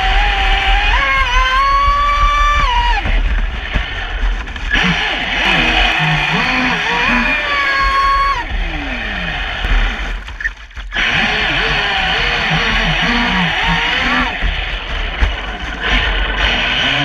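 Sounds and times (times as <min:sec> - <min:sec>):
electric motor whining: 0:04.6 - 0:17.0.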